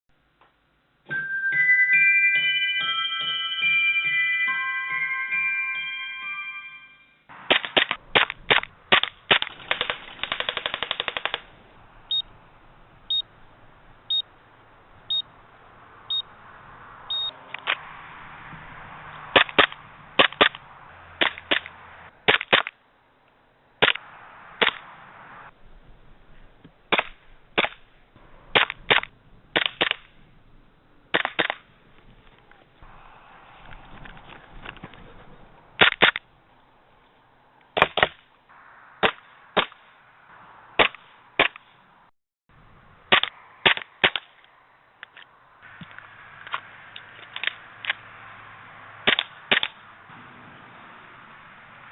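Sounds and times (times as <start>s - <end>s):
chiming mallet music: 1.1s - 7.3s
airsoft guns shooting: 7.4s - 11.6s, 19.3s - 20.6s, 21.2s - 22.8s, 26.9s - 30.2s, 31.1s - 31.7s.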